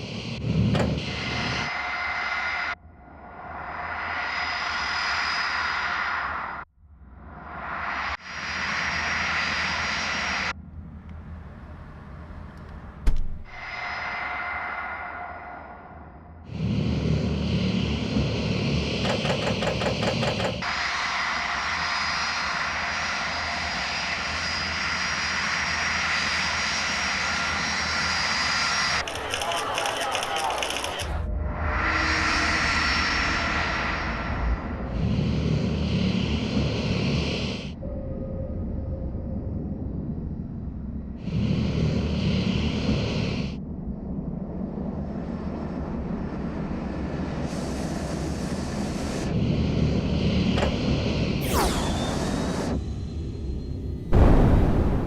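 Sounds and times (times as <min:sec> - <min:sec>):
hiss: 0:03.6 - 0:06.6, 0:07.8 - 0:10.6, 0:16.5 - 0:30.9, 0:31.8 - 0:37.8, 0:41.2 - 0:43.6, 0:46.3 - 0:53.3
aircraft engine running: 0:09.9 - 0:13.5, 0:16.5 - 0:31.1
machine engine rumbling: 0:16.5 - 0:21.0.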